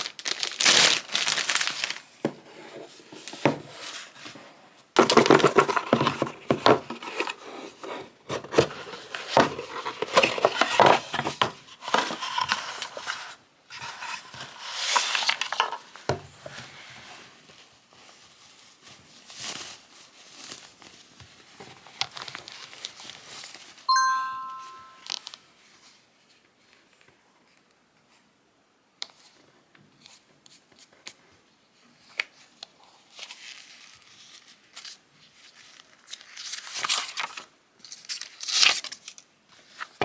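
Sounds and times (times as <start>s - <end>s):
crinkling and rustling handling noise: 0.0s - 28.3s, 29.0s - 40.0s
short tone: 23.9s - 25.2s.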